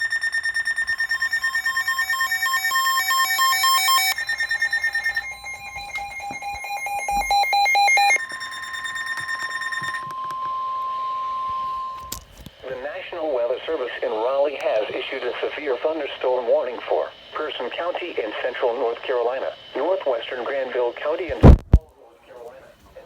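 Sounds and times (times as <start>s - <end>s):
electronic beeping data tones: 0.0s - 12.2s
steady warning alarm tone: 0.0s - 20.9s.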